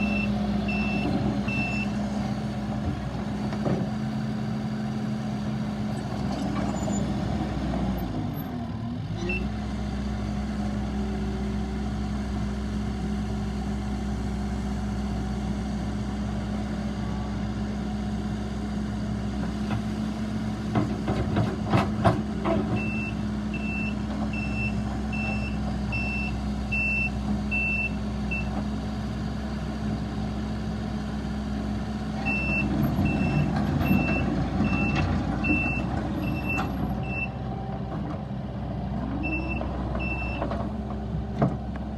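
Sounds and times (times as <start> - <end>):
reversing alarm beeping: 0.0 - 2.0
diesel engine running: 0.0 - 41.9.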